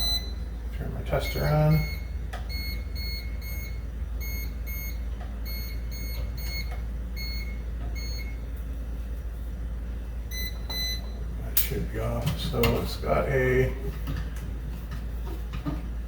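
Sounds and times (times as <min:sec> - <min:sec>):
electrical tester beeping: 0:00.0 - 0:08.4, 0:10.3 - 0:11.3.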